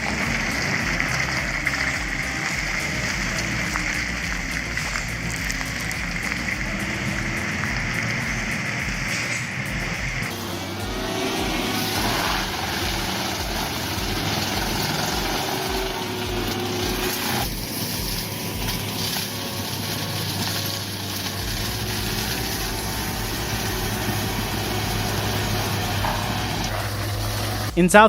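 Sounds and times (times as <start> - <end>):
heavy machine engine humming: 0.0 - 28.0.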